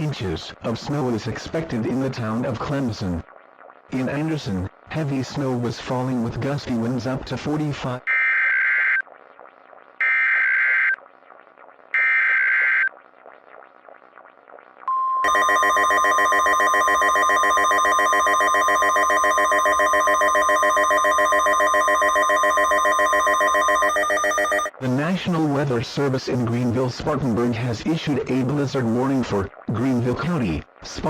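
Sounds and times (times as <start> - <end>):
steady alert tone: 15.2 - 24.8.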